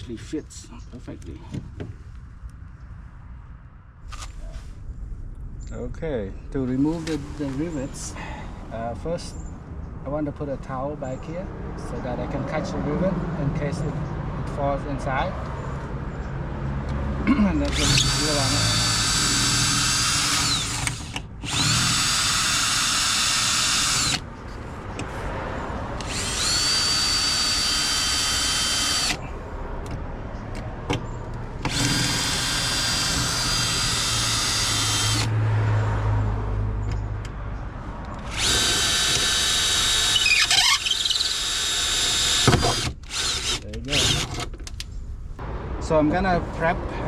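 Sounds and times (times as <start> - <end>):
power drill drilling rivets: 17.6 - 24.2, 26.0 - 29.2, 31.6 - 35.3, 38.2 - 44.6.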